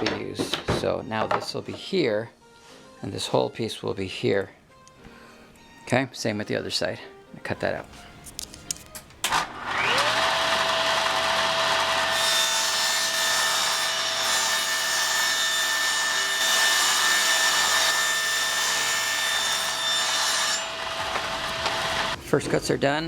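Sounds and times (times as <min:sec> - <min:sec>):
power saw whining: 0:09.2 - 0:14.3, 0:20.4 - 0:22.2
saw cutting through wood: 0:09.2 - 0:22.2.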